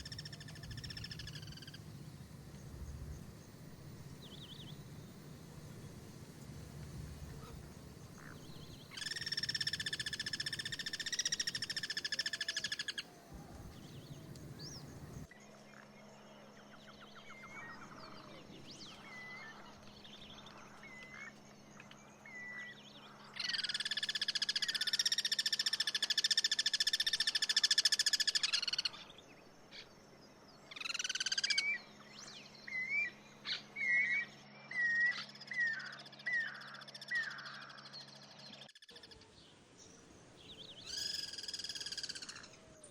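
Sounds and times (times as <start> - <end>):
cuckoo rattling calls: 0.0 - 2.0, 7.3 - 15.3.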